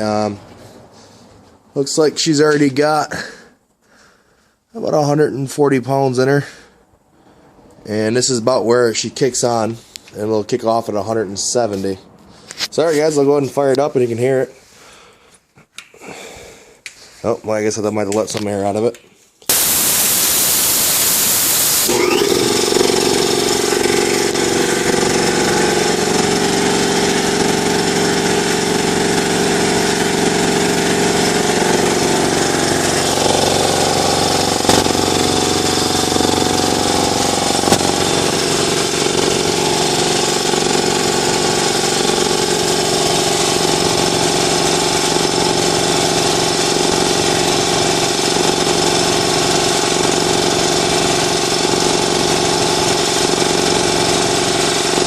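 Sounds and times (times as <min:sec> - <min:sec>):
air compressor running: 0:19.5 - 0:55.0.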